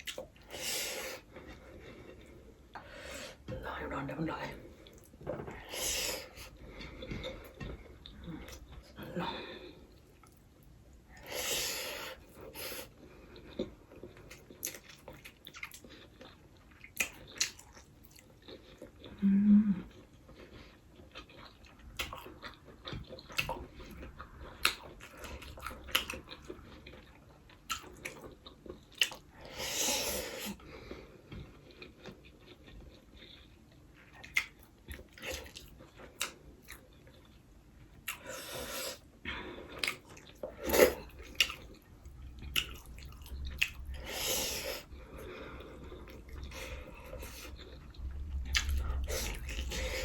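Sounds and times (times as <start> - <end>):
chewing with mouth clicks: 0.0 - 0.5, 12.2 - 19.2, 19.8 - 29.4, 30.4 - 50.0.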